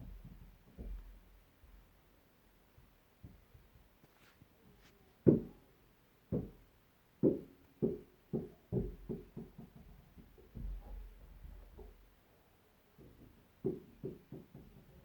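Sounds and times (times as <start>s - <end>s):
dull irregular knocks: 0.0s - 1.8s, 5.2s - 5.6s, 6.3s - 6.6s, 7.2s - 12.1s, 13.0s - 15.0s.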